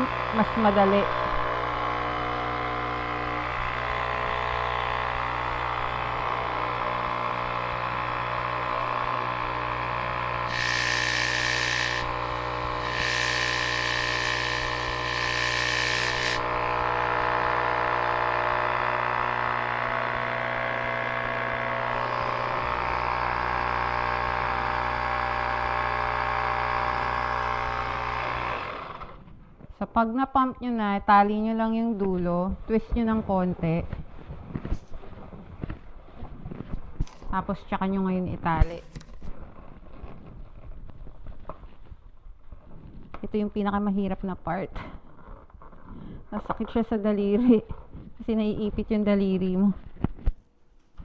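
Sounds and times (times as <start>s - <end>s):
balloon pump motor hum: 0.0s - 29.3s.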